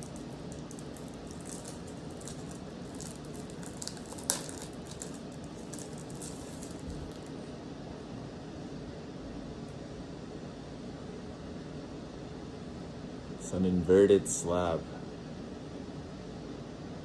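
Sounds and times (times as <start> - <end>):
plastic sleeve crinkling: 0.0 - 7.5.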